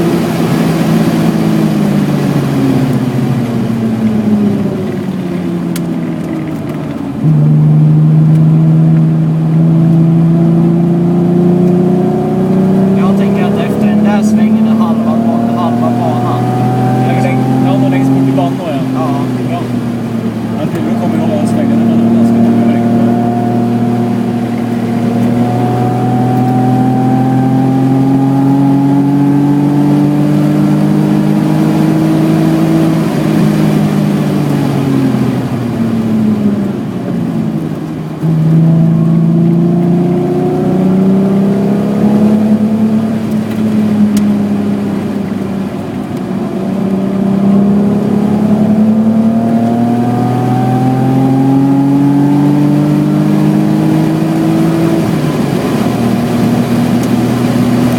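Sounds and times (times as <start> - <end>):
car engine revving: 0.0 - 57.9.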